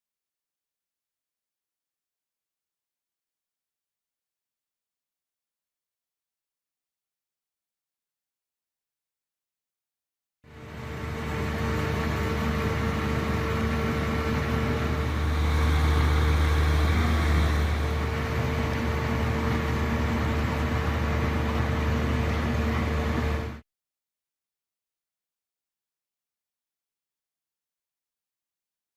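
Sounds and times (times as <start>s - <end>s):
diesel engine droning: 10.5s - 23.6s.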